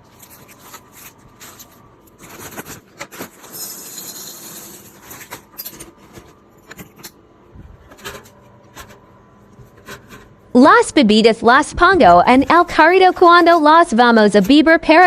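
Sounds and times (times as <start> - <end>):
items knocking and clicking: 4.9 - 7.2.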